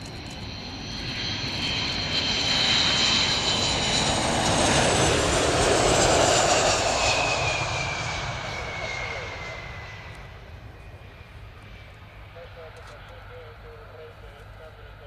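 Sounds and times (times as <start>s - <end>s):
jet passing by: 0.0s - 15.0s.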